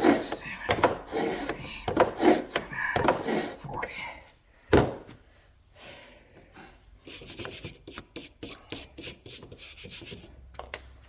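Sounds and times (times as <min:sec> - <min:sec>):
metal file rasping strokes: 0:00.0 - 0:03.7.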